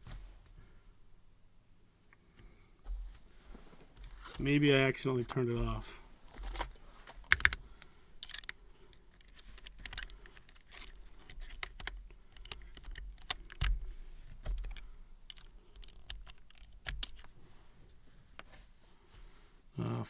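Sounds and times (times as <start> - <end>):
mechanical keyboard clacking: 7.2 - 7.6, 9.2 - 13.8, 14.4 - 17.3.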